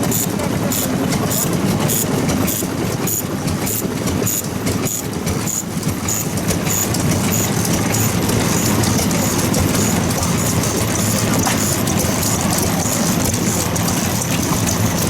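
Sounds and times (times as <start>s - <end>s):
stationary engines running: 0.0s - 15.0s
sharp repeating click: 1.3s - 10.2s.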